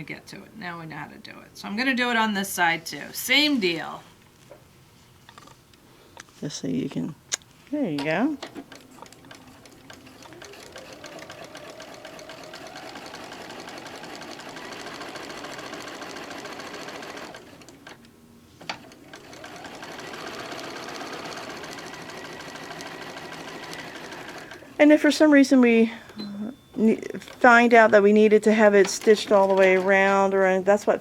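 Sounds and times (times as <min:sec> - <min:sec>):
sewing machine stitching: 0:08.4 - 0:24.7, 0:28.6 - 0:30.3.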